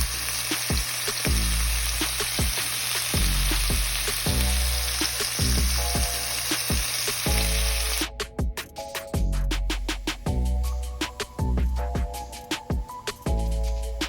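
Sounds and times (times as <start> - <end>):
meat sizzling in a frying pan: 0.0 - 8.1
music with deep bass beat: 0.0 - 14.0.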